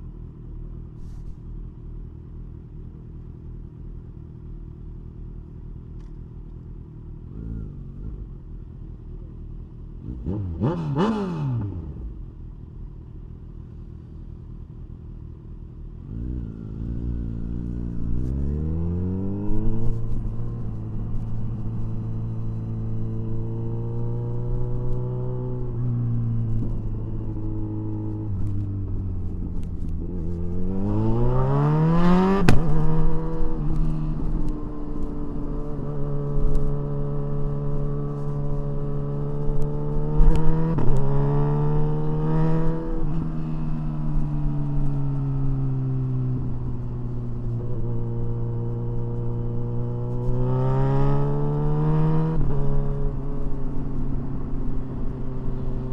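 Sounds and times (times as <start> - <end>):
motorcycle engine revving: 9.9 - 12.5, 16.0 - 55.9.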